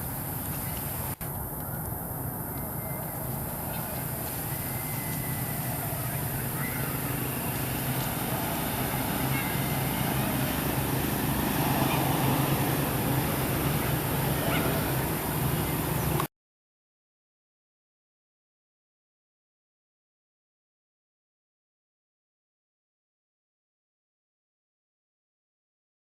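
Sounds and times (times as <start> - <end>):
low engine hum: 0.0 - 16.3
faint high chirps: 0.5 - 16.3.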